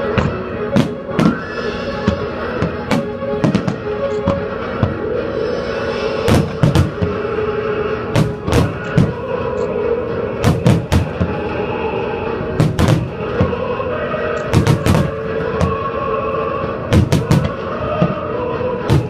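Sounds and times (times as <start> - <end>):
background music: 0.0 - 19.0
fireworks bursting in sharp bangs: 0.1 - 5.0, 6.2 - 7.4, 8.0 - 9.4, 10.4 - 11.5, 12.6 - 13.6, 14.5 - 15.9, 16.9 - 18.2.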